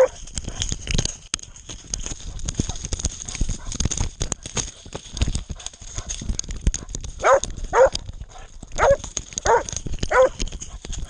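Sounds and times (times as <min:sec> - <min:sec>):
dog barking: 0:00.0 - 0:00.6, 0:07.2 - 0:08.0, 0:08.8 - 0:10.4
clatter of knocks and rustles: 0:00.0 - 0:11.0.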